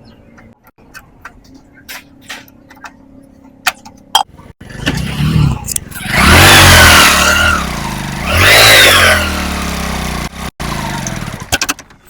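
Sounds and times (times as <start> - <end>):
vehicle engine revving and idling: 4.6 - 11.6.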